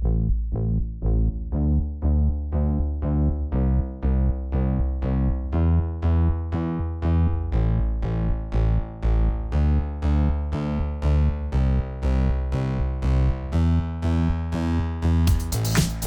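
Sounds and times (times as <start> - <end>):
pulsing synthesizer music: 12.5 - 16.0.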